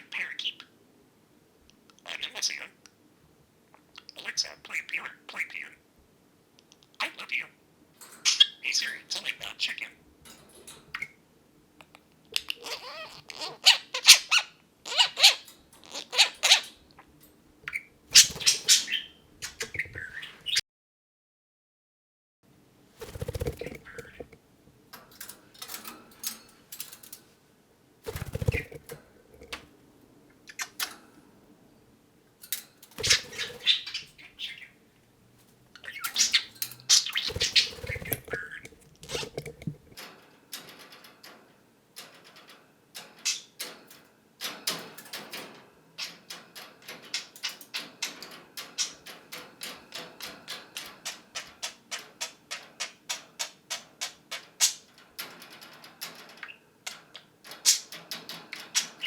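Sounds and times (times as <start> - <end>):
budgerigar chirping and chattering: 12.4 - 16.7, 17.7 - 20.6, 33.0 - 34.8, 35.8 - 39.6.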